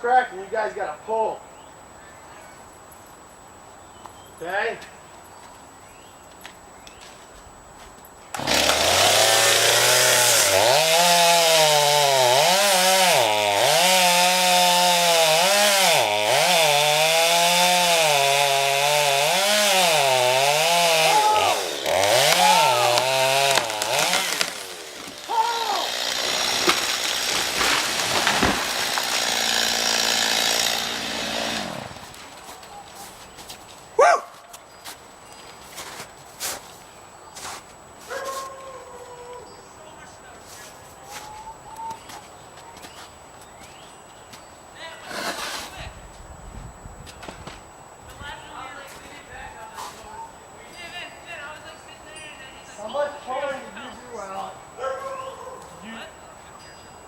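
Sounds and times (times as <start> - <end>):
chainsaw cutting tree: 8.3 - 32.4.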